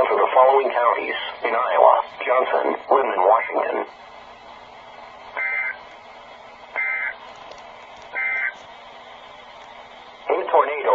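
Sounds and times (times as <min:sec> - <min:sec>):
faint radio hiss: 0:00.0 - 0:10.9
shrill two-tone data chirps: 0:05.4 - 0:05.8, 0:06.8 - 0:07.2, 0:08.1 - 0:08.6.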